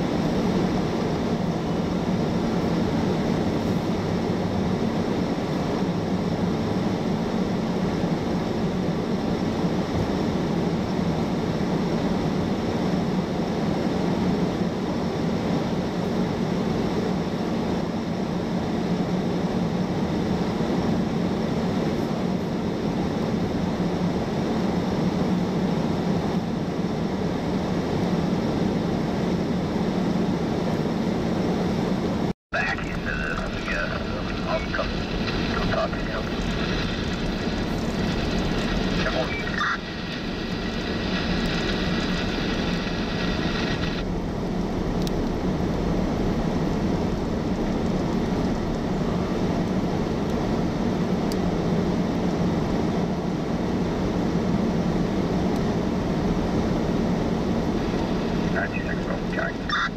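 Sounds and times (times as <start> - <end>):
moving vehicle drone: 0.0 - 59.9.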